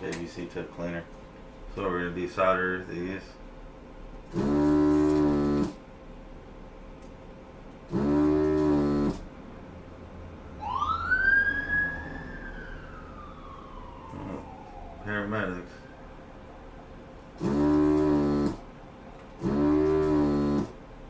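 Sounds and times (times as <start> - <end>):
steady buzz: 4.2 - 5.9, 7.9 - 10.0, 17.1 - 20.9
emergency vehicle siren wailing: 10.4 - 17.0.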